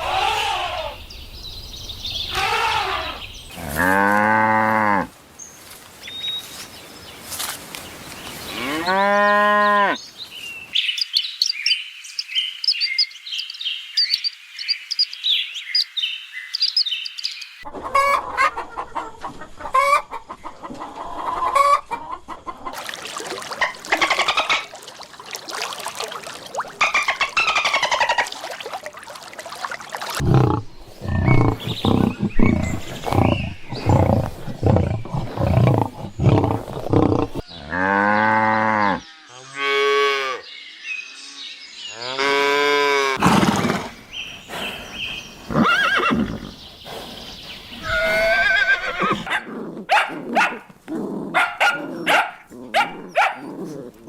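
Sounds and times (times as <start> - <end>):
long drawn-out animal calls: 0.0 - 1.0, 2.3 - 3.2
chicken clucking: 17.7 - 22.8.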